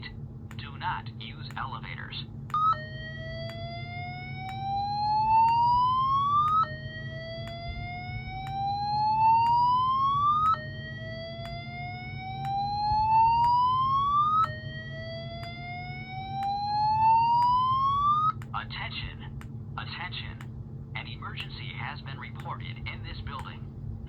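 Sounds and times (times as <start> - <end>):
slow whoop alarm tone: 2.5 - 18.5.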